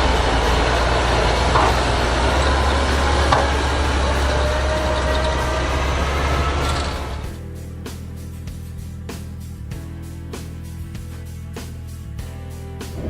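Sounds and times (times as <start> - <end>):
heavy machinery engine drone: 0.0 - 7.4.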